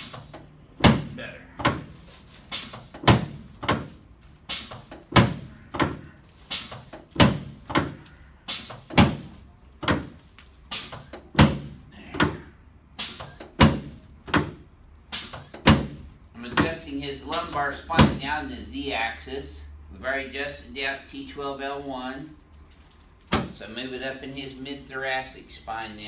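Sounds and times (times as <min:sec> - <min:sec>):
mechanical thumps of adjusting device: 0:02.5 - 0:10.2.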